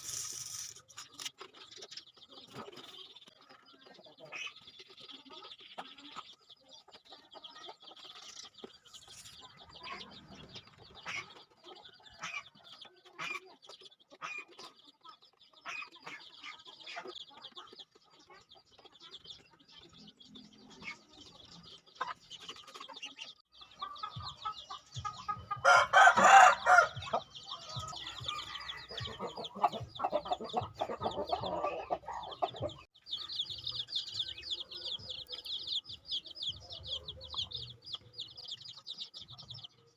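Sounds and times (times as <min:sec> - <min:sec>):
chickens clucking: 0:00.0 - 0:39.9
rooster crowing: 0:25.6 - 0:27.0.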